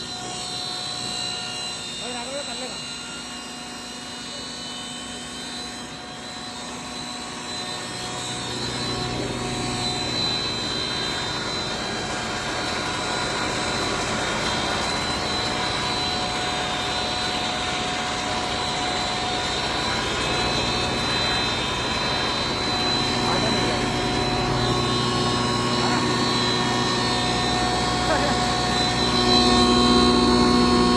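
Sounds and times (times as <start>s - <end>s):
machine blower whirring and whining: 0.0s - 30.9s.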